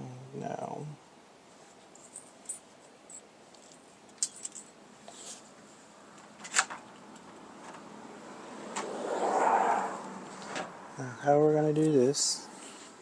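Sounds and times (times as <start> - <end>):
metal parts clicking and tapping: 2.0 - 4.7.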